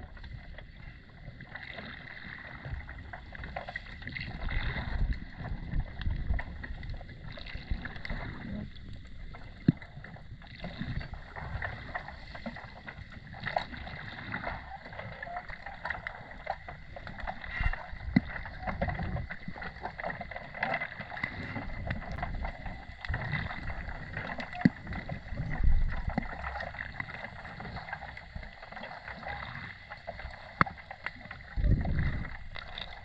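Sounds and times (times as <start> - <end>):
water moving underwater: 0.0 - 33.0
low gurgling rushes: 1.7 - 33.0
clicks and crackles: 14.5 - 33.0.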